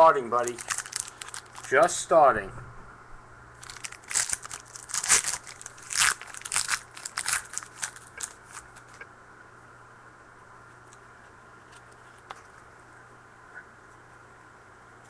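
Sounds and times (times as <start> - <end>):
card wrapper crinkling: 0.0 - 1.9, 3.6 - 9.0.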